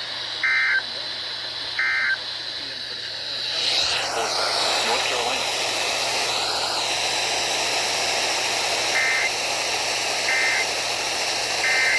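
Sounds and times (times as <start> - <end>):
radio receiver hiss: 0.0 - 11.9
two-tone data chirp: 0.4 - 0.9, 1.8 - 2.2, 9.0 - 9.3, 10.3 - 10.7, 11.6 - 11.9.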